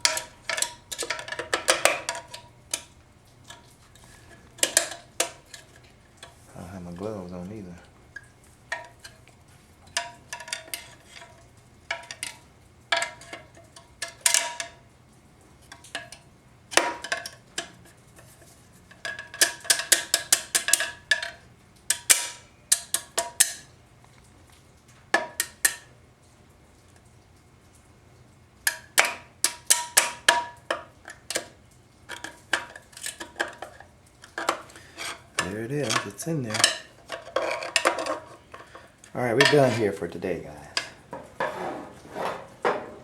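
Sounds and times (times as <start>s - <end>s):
metal tool clinking on metal: 34.4s - 41.6s
metal scraping: 34.4s - 43.0s.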